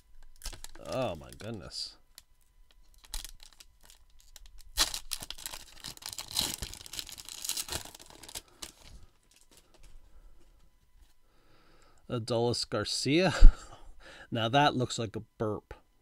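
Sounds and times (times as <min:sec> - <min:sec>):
wrapper tearing and crinkling: 0:00.2 - 0:09.9.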